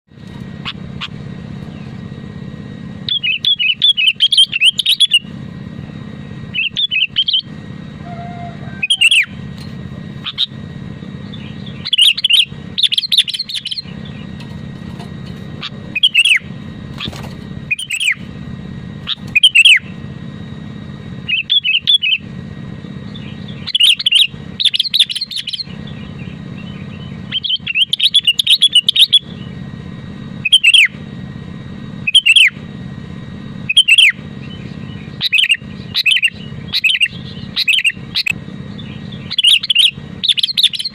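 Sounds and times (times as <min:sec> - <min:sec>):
steady low hum: 0:00.0 - 0:40.9
bird chirping: 0:03.1 - 0:05.3, 0:06.5 - 0:09.4, 0:10.1 - 0:10.6, 0:11.2 - 0:14.5, 0:15.4 - 0:18.3, 0:19.0 - 0:20.0, 0:21.2 - 0:22.3, 0:23.0 - 0:29.6, 0:30.4 - 0:31.0, 0:32.0 - 0:32.6, 0:33.7 - 0:40.9.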